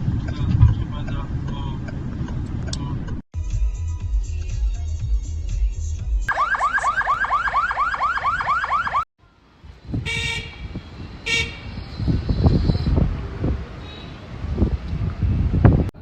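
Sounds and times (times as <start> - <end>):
wind noise on microphone: 0.0 - 3.2, 9.6 - 16.0
car alarm siren: 6.3 - 9.1
short horn blasts: 10.0 - 11.7.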